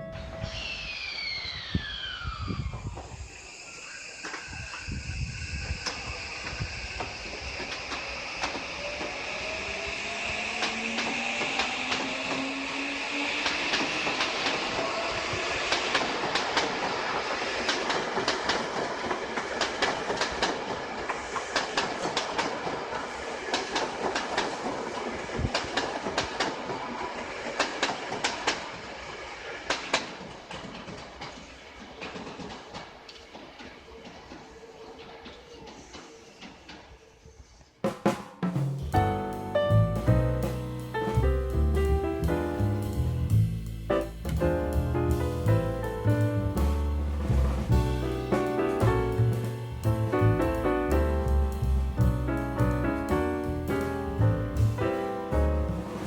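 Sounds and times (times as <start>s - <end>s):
electric train motor whine: 0.0s - 27.9s
wheels clicking over rail joints: 5.7s - 38.0s, 39.0s - 56.0s.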